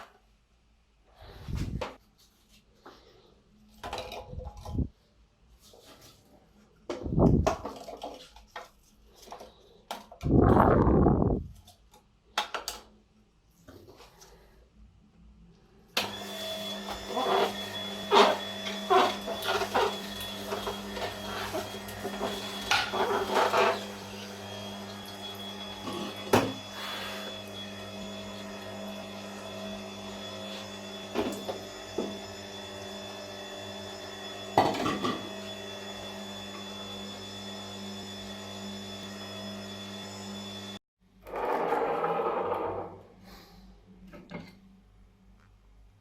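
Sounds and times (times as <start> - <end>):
juicer motor hum: 16.0 - 41.7.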